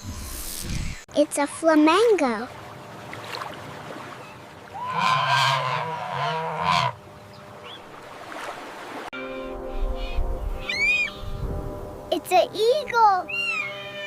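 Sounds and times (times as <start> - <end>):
flamingo honking: 4.8 - 7.0
steady low hum: 9.2 - 14.0.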